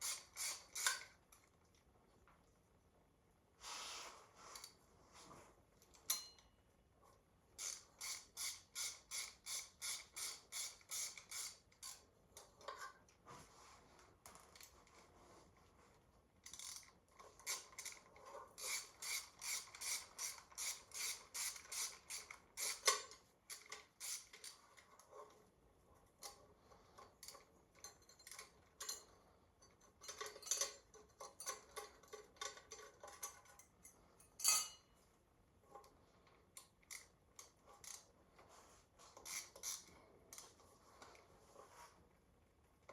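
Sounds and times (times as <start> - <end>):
ratchet wrench clicking: 0.0 - 1.0, 7.6 - 12.0, 16.5 - 16.9, 18.6 - 24.5, 39.2 - 39.9.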